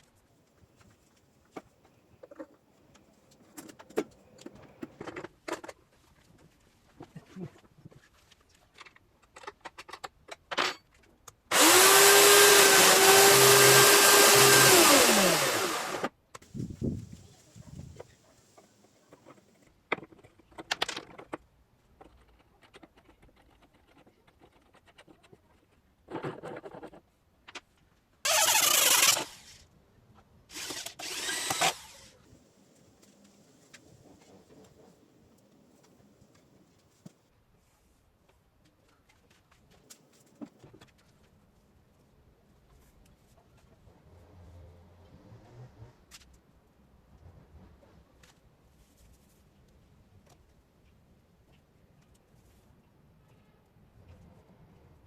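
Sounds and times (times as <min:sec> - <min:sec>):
knocks and clatters of wood or tools: 0:00.8 - 0:07.2, 0:08.7 - 0:11.1.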